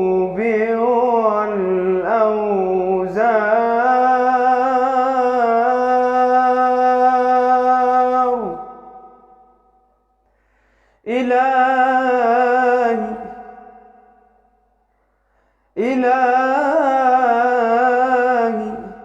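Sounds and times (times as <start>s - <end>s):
man singing unaccompanied: 0.0s - 8.6s, 11.1s - 13.7s, 15.8s - 19.0s.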